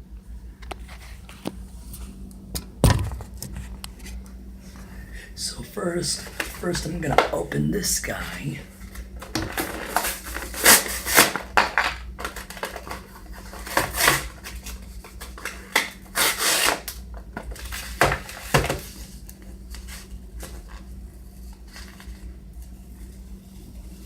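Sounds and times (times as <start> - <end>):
packaging rustling and tearing: 6.2 - 7.4, 8.4 - 22.8.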